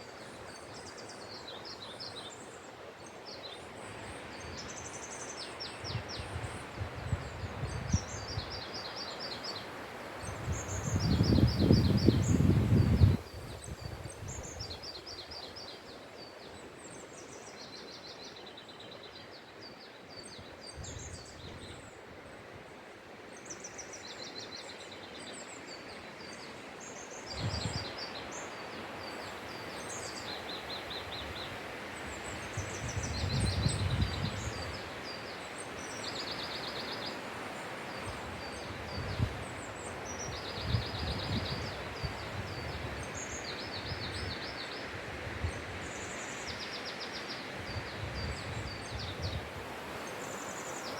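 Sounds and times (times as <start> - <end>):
small birds singing high trills: 0.0 - 22.4, 23.4 - 50.9
wind rushing through forest: 0.0 - 50.9
wind buffeting microphone: 10.3 - 14.7, 32.2 - 34.8.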